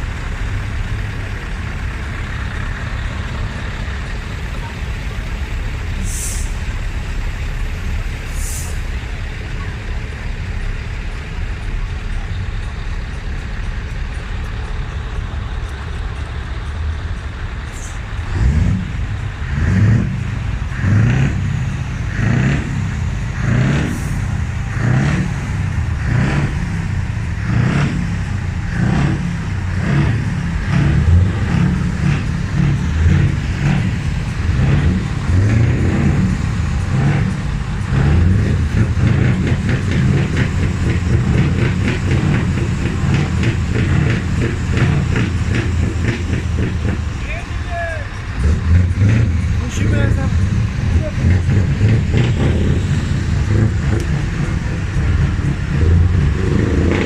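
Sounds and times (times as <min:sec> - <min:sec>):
diesel truck engine revving: 0:00.0 - 0:57.0
air brake hisses: 0:06.0 - 0:06.6.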